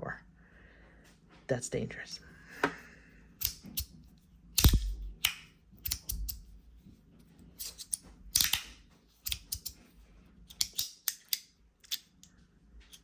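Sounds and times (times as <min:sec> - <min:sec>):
fidget slider clicking: 0:04.6 - 0:06.5, 0:07.6 - 0:09.8.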